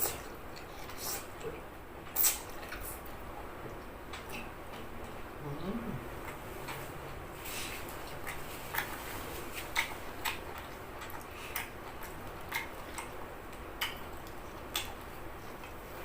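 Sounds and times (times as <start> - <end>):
wet chewing mouth smacks: 7.9 - 15.8.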